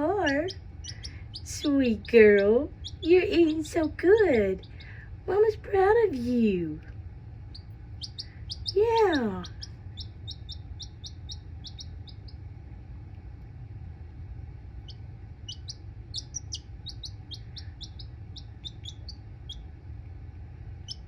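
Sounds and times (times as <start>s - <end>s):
chick peeping: 0.0s - 6.2s, 7.5s - 12.5s, 14.8s - 19.8s, 20.8s - 21.0s
steady low hum: 0.0s - 21.0s.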